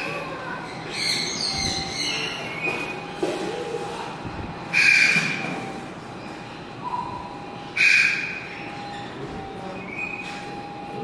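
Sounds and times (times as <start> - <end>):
owl calling: 4.7 - 5.4, 6.8 - 8.7.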